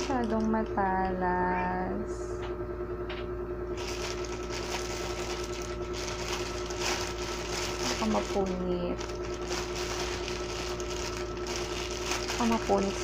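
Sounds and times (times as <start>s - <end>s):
scissors cutting plastic: 0.0s - 0.6s, 3.8s - 13.0s
plastic crinkling: 0.0s - 0.7s, 3.8s - 13.0s.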